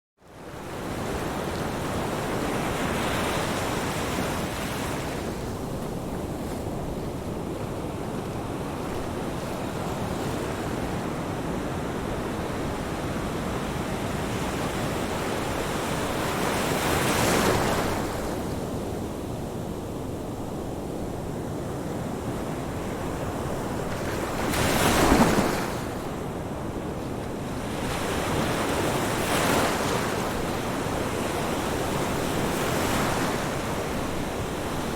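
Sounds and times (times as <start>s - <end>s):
ocean waves breaking: 22.6s - 26.3s, 27.3s - 34.9s.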